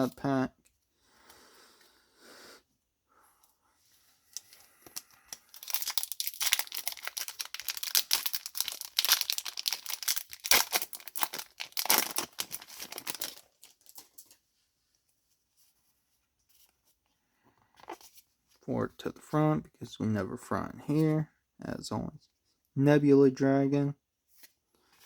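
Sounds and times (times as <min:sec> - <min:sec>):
foil wrapper tearing and crinkling: 0:04.4 - 0:14.3.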